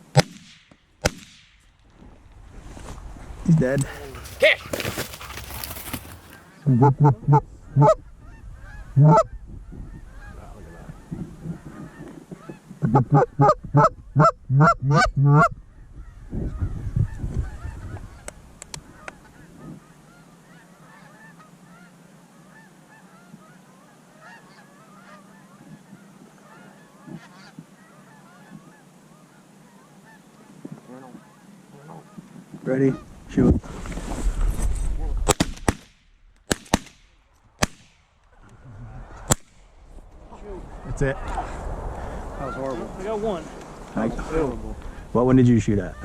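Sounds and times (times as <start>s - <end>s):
distant flock honking and chatter: 3.6s - 13.3s, 15.7s - 33.5s, 40.2s - 46.0s
goose honking: 3.8s - 15.5s, 17.1s - 33.1s, 42.3s - 45.0s.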